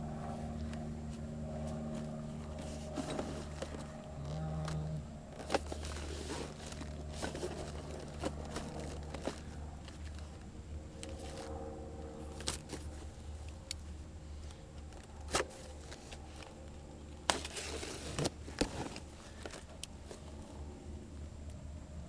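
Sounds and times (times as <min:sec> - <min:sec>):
steady low hum: 0:00.0 - 0:22.0
plastic packaging rustling: 0:05.4 - 0:10.3.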